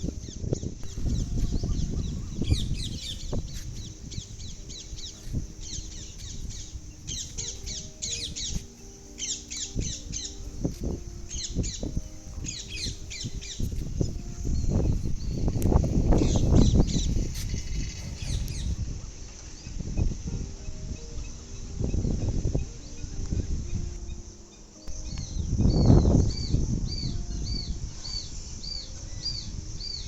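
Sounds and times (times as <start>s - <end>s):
small birds chirping: 0.0s - 18.8s
steady low noise: 0.0s - 30.0s.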